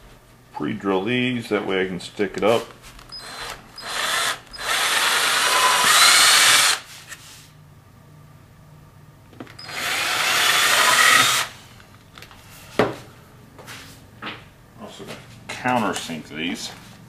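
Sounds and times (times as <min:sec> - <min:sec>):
power drill drilling wood: 0:03.1 - 0:06.9, 0:09.6 - 0:11.5.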